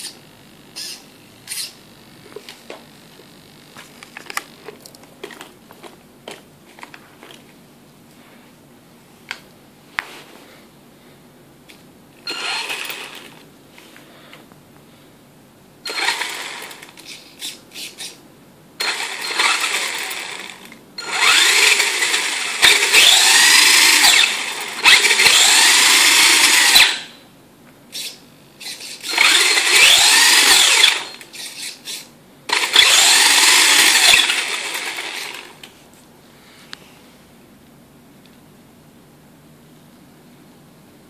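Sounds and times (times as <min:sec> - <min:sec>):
rc car electric motor whining: 0:00.8 - 0:01.8, 0:12.3 - 0:13.4, 0:15.9 - 0:18.2, 0:18.8 - 0:27.1, 0:27.9 - 0:35.6.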